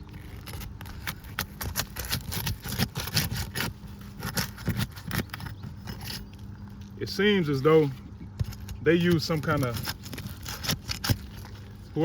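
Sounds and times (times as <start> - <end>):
pry tool scraping shingles: 0.0 - 6.4, 7.8 - 12.0.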